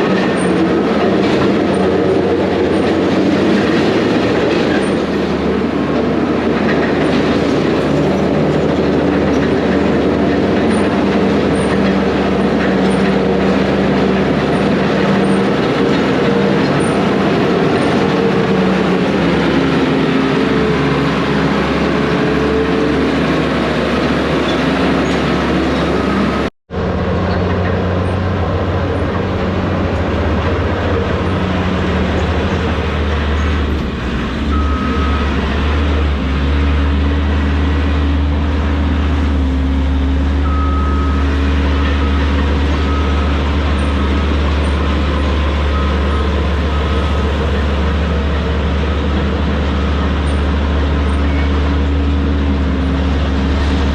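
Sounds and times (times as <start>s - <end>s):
diesel engine running: 0.0s - 53.9s
steel tracks clattering: 0.0s - 53.9s.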